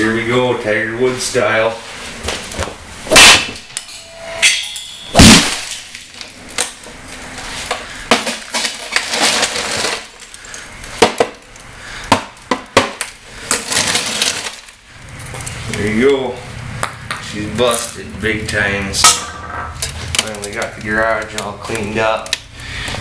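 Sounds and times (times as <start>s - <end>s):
glass and plastic breaking: 3.1s - 6.9s, 7.7s - 14.8s
golf club smashing television: 3.1s - 6.9s, 7.6s - 10.4s, 11.0s - 14.8s.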